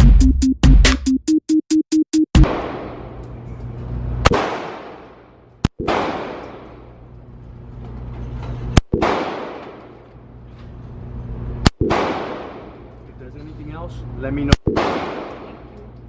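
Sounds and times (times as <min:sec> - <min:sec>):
gunshots with echo: 0:02.4 - 0:03.2, 0:04.3 - 0:06.8, 0:08.9 - 0:09.9, 0:11.8 - 0:12.9, 0:14.5 - 0:15.7.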